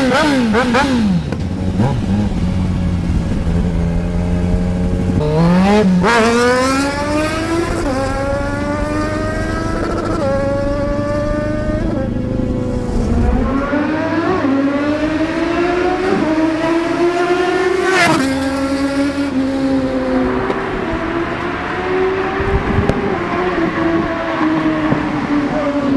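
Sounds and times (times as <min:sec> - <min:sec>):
motorcycle engine accelerating hard: 0:00.0 - 0:25.9.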